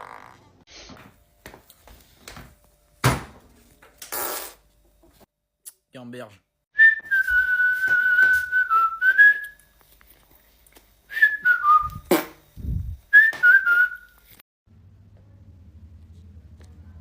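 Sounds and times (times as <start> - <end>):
person whistling a tune: 6.8 - 9.6, 11.1 - 12.0, 13.1 - 14.2
sharp pop: 12.0 - 12.4.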